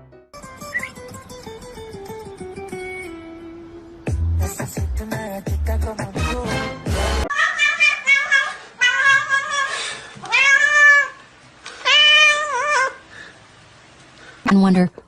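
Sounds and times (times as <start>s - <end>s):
cat meowing: 7.3s - 11.2s, 11.8s - 13.0s.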